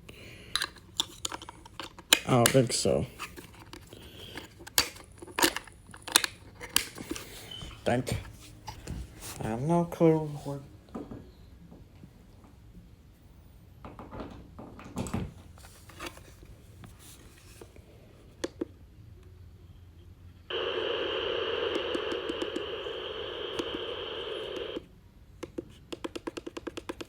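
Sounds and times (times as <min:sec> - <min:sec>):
plastic handling clicks: 0:00.5 - 0:07.3
radio static hiss: 0:20.5 - 0:24.9.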